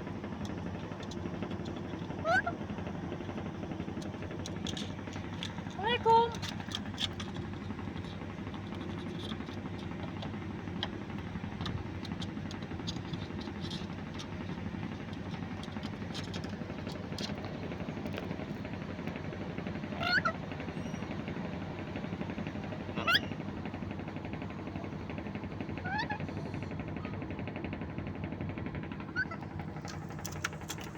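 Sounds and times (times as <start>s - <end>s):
steady low hum: 0.0s - 30.9s
parrot rising call: 2.2s - 2.6s, 20.0s - 20.4s.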